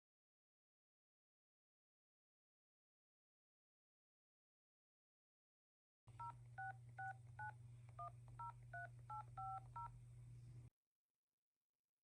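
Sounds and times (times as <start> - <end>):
steady low hum: 6.1 - 10.7
phone keypad dialling beeps: 6.2 - 9.9.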